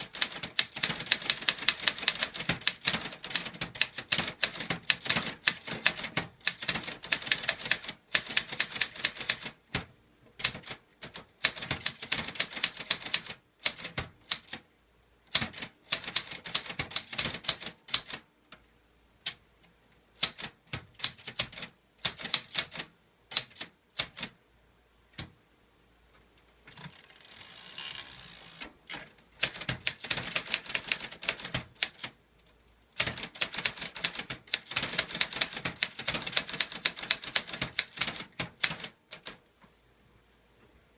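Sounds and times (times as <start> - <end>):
typewriter keystroke clacks: 0.0 - 14.6, 15.3 - 18.2, 20.2 - 24.3, 28.9 - 32.2, 33.0 - 39.4.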